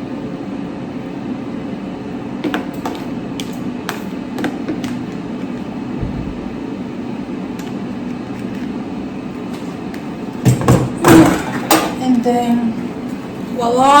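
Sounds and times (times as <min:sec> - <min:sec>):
steady background hum: 0:00.0 - 0:14.0
utensils knocking against dishes: 0:02.4 - 0:05.7, 0:10.4 - 0:12.1.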